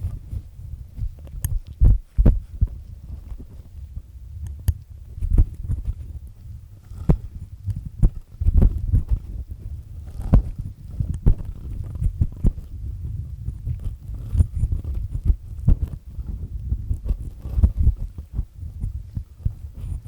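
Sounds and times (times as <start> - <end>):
earpick scraping close to microphone: 4.5 - 20.0.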